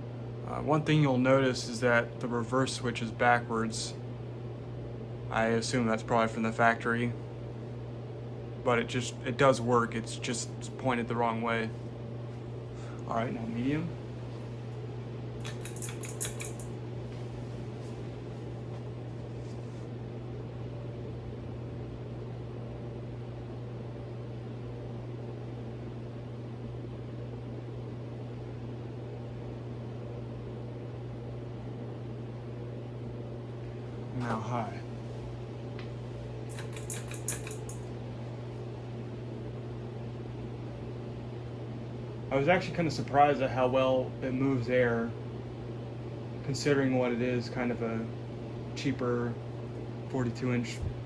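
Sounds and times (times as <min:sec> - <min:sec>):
ceiling fan motor hum: 0:00.0 - 0:51.0
light clicks: 0:15.4 - 0:16.7.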